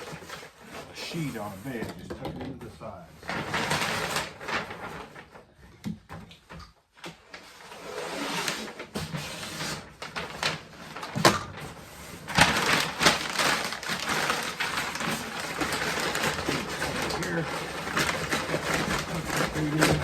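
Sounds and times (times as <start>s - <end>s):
packing material rustling: 2.8s - 5.6s, 7.2s - 20.0s.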